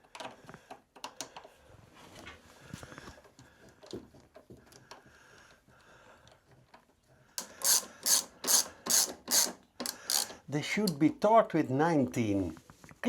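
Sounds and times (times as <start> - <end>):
ratchet wrench rasping: 7.4 - 11.0.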